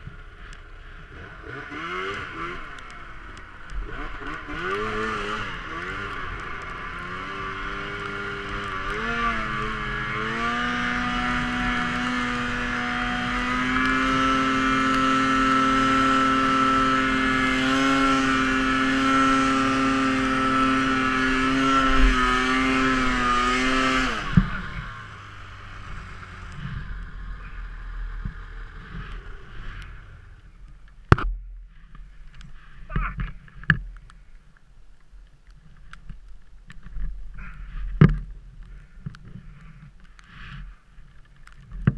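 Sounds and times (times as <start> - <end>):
snowmobile engine revving: 1.0 - 30.5.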